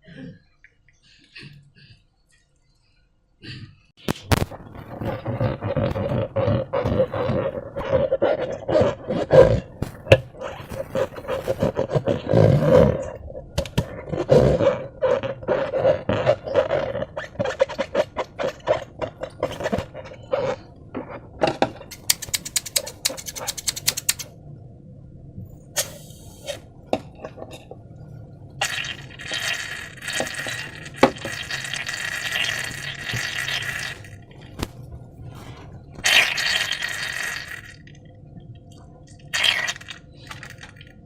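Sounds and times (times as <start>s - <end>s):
slime squelching: 4.0s - 21.3s, 28.6s - 38.0s, 39.1s - 41.0s.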